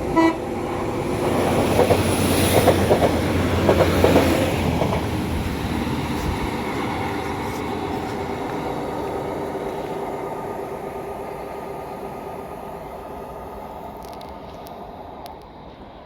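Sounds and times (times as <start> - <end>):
train rumbling past: 0.0 - 16.0.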